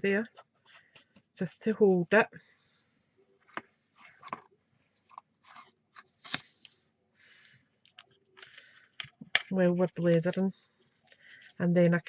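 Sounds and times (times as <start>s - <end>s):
tape tearing: 5.4s - 6.6s.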